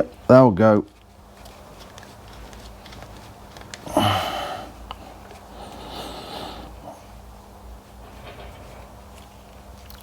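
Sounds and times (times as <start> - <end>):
person breathing: 3.8 - 7.2.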